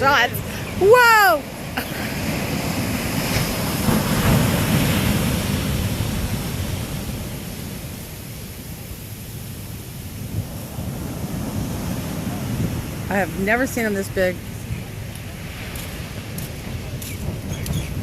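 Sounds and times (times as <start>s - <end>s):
ocean waves breaking on shore: 0.0s - 18.0s.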